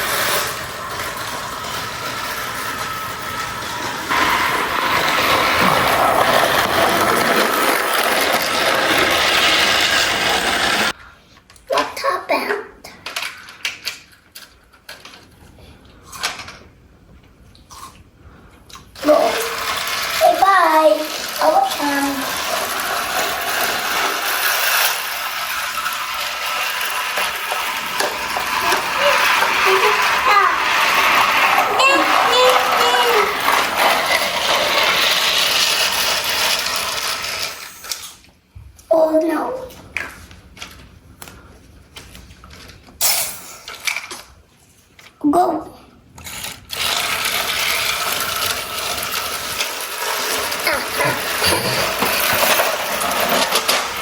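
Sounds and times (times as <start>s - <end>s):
toy train motor whirring: 0.0s - 11.0s, 18.8s - 38.3s, 42.6s - 44.3s, 46.2s - 54.0s.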